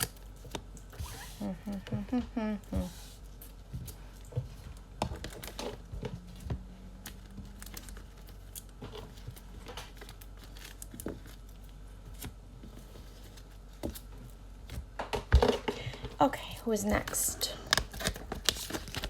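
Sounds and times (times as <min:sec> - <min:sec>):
plastic packaging crinkling: 0:03.2 - 0:15.6, 0:17.0 - 0:19.0.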